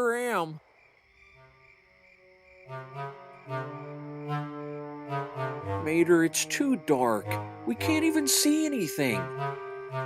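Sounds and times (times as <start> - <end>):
slow melodic music notes: 3.0 - 10.0.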